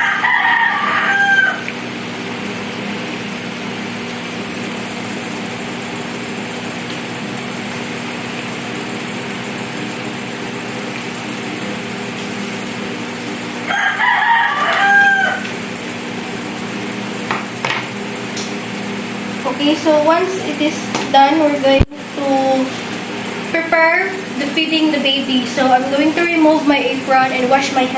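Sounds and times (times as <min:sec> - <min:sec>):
rooster crowing: 0:00.0 - 0:01.8, 0:13.6 - 0:15.8
steady low hum: 0:00.0 - 0:27.9.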